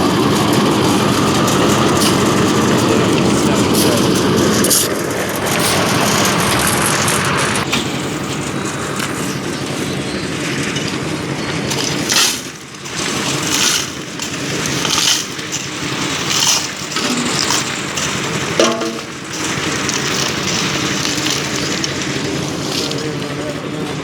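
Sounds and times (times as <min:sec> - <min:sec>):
concrete mixer drum rumbling: 0:00.0 - 0:24.0.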